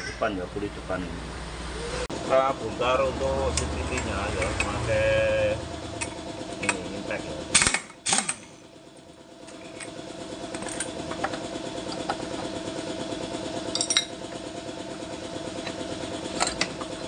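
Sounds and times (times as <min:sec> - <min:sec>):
engine idling: 0:00.0 - 0:17.0
impact wrench burst: 0:03.2 - 0:08.7
metal clinks of tools: 0:13.7 - 0:14.2.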